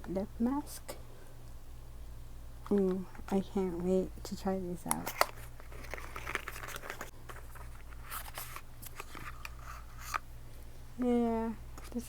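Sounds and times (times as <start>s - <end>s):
packaging crinkling and rustling: 4.9s - 10.2s.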